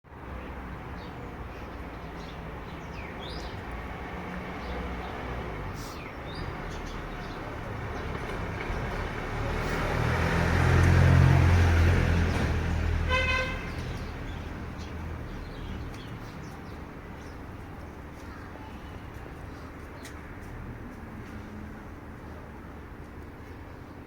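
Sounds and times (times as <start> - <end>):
vehicle engine passing: 3.4 - 16.4
short horn toot: 13.1 - 13.8.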